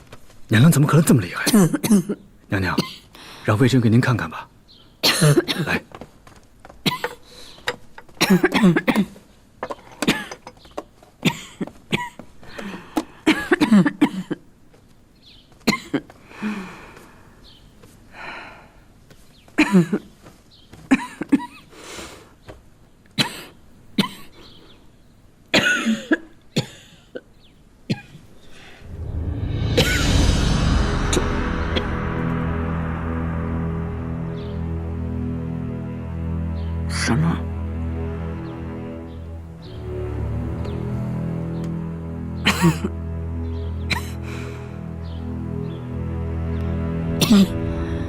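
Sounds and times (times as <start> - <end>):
woman coughing: 13.3 - 14.4, 19.6 - 20.0, 25.6 - 26.9, 42.5 - 42.9.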